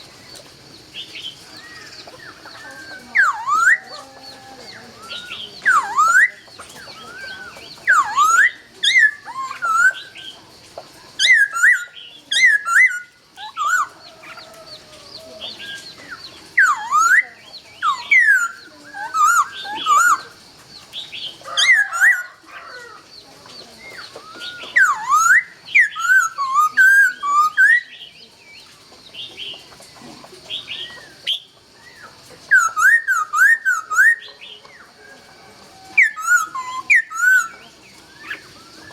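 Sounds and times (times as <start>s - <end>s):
bird singing whistled phrases: 1.2s - 3.9s, 5.0s - 10.3s, 11.2s - 14.0s, 15.6s - 20.3s, 23.8s - 28.1s, 30.6s - 34.6s, 35.9s - 38.9s.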